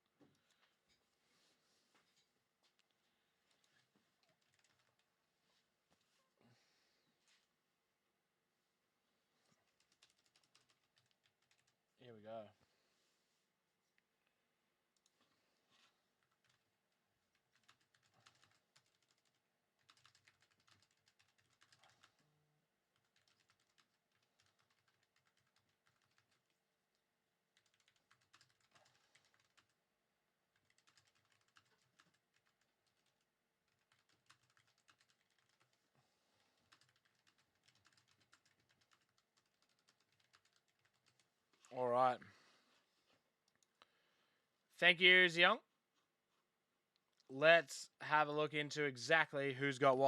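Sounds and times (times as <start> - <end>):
faint keyboard typing: 0.1 - 1.0, 2.0 - 6.2, 9.4 - 12.0, 13.9 - 44.1.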